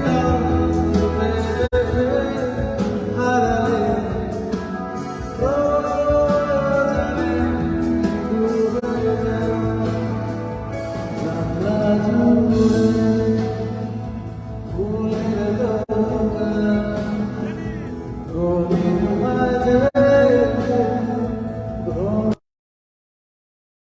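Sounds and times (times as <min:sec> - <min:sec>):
band music with bass and drums: 0:00.0 - 0:22.4
man singing: 0:00.0 - 0:22.4.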